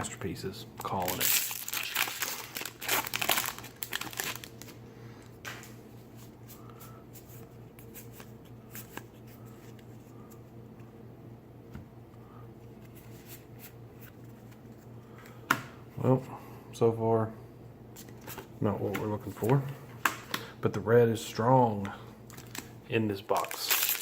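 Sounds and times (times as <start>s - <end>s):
low steady hum: 0.0s - 24.0s
cards rustling: 0.8s - 4.8s, 5.4s - 10.6s, 21.8s - 24.0s.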